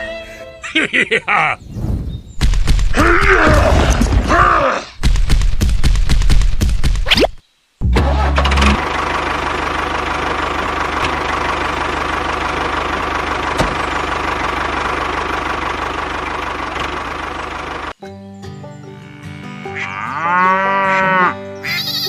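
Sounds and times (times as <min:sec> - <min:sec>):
tractor engine idling: 0:08.0 - 0:18.0.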